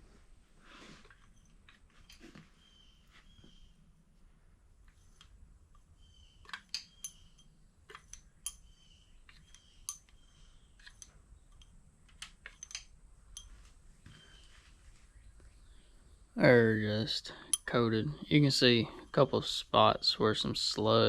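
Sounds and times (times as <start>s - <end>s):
metal engine parts clinking: 6.5s - 8.8s, 12.4s - 13.6s.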